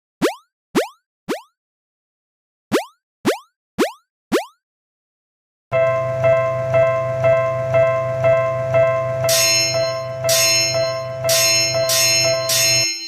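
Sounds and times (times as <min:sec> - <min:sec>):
level crossing warning bell: 0:05.7 - 0:13.0
bright bell strikes: 0:05.8 - 0:13.0.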